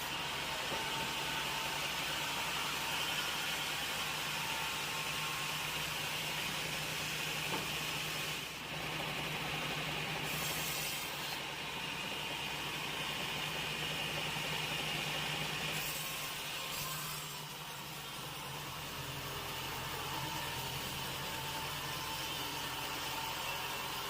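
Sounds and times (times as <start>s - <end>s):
sawmill machinery humming: 0.0s - 24.0s.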